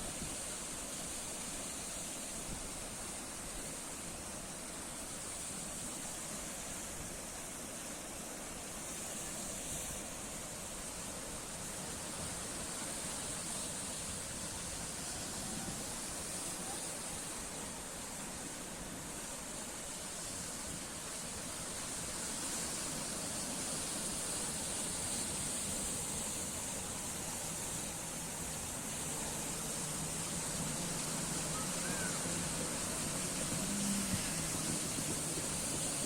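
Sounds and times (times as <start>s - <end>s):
sea waves breaking: 9.6s - 36.0s.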